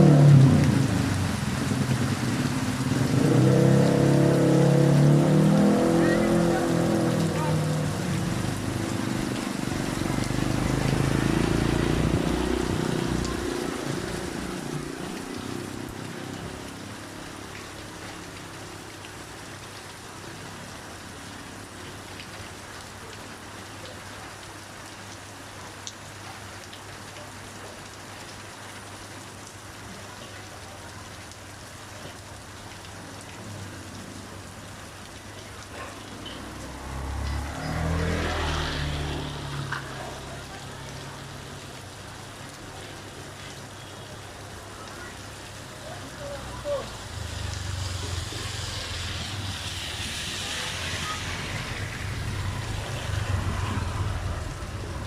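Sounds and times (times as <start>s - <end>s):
steady rain hiss: 0.0s - 55.0s
vehicle passing with low rumble: 36.1s - 40.6s, 47.2s - 55.0s.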